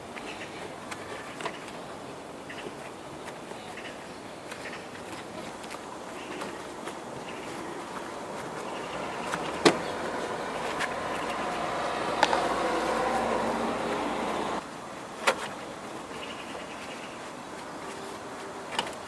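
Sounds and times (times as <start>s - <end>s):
motor vehicle running: 7.3s - 14.7s.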